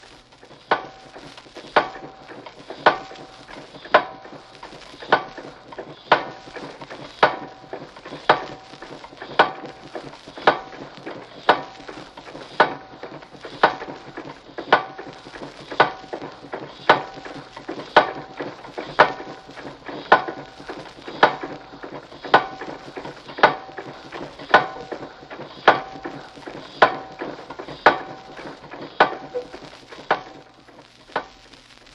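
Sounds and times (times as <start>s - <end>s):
constant crackling hiss: 0.0s - 31.9s.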